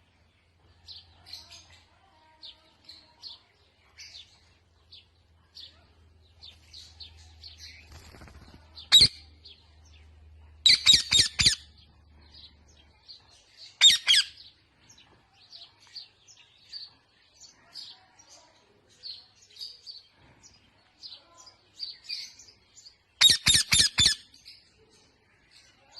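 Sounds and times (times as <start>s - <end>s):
parrot chirping: 10.6s - 11.7s, 13.8s - 14.4s, 23.2s - 24.2s
parrot squawking: 10.7s - 11.7s, 13.8s - 14.4s, 23.2s - 24.2s.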